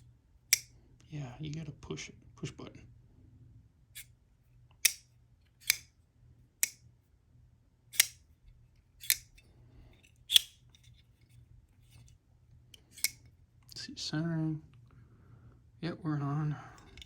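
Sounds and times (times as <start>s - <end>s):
folding knife clicking open and shut: 0.5s - 0.7s, 4.7s - 5.9s, 6.6s - 6.8s, 7.9s - 8.2s, 9.0s - 9.4s, 10.3s - 10.7s, 12.8s - 13.2s.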